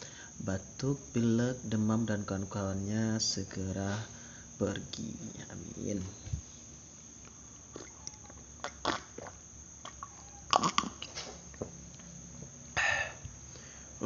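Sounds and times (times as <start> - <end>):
mouth clicks: 7.6 - 11.3
person sipping and swallowing: 7.7 - 11.3
breathy burst: 12.8 - 14.0.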